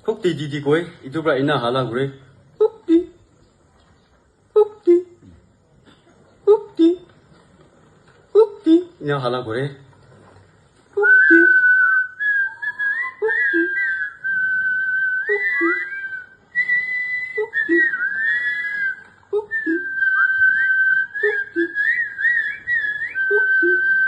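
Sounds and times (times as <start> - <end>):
person imitating cuckoo call: 11.0 - 14.2, 15.3 - 16.2, 19.3 - 20.4, 21.0 - 22.2, 23.2 - 24.0
whistled bird call: 11.0 - 24.0.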